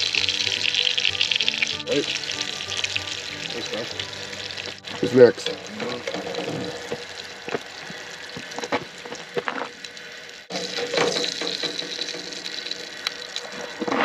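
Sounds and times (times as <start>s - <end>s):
food sizzling in a frying pan: 0.0s - 14.0s.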